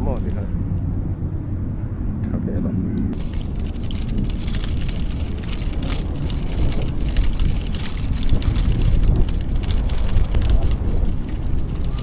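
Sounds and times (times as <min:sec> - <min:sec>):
wind rumbling on microphone: 0:00.0 - 0:12.0
bicycle rattling clicks: 0:03.1 - 0:12.0.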